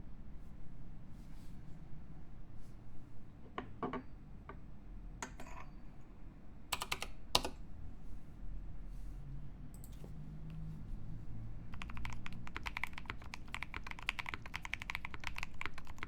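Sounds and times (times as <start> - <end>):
mechanical keyboard typing: 6.7 - 7.6, 11.7 - 16.0.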